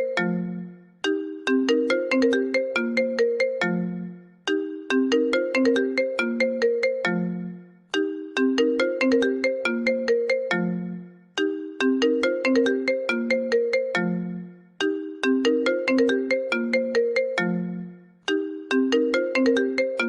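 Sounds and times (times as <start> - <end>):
phone ringtone melody: 0.0 - 20.0.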